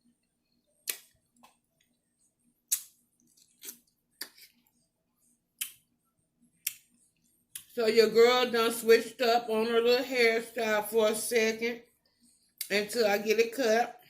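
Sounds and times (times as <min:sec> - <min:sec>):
wet mouth smacks of chewing: 0:02.7 - 0:04.5.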